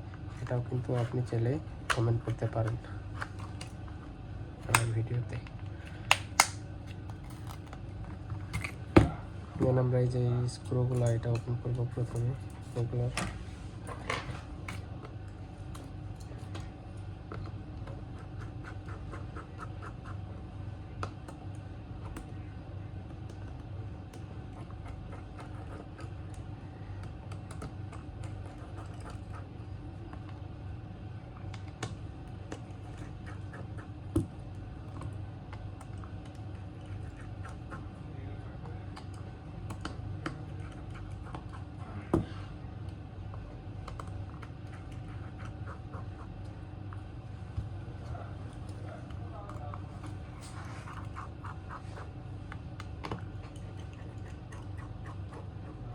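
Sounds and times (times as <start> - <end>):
steady low hum: 0.0 - 55.9.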